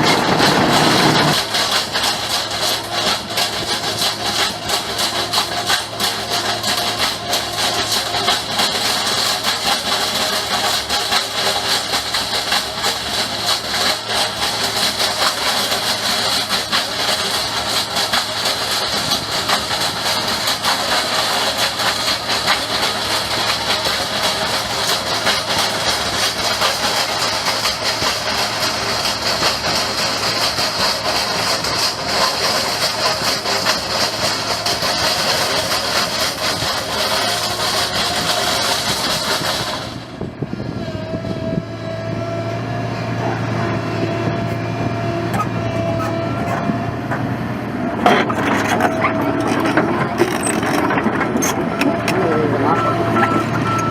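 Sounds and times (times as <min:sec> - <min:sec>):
fine crackling and clatter: 0:00.0 - 0:08.0, 0:48.0 - 0:52.5
heavy machine engine running: 0:00.0 - 0:53.9.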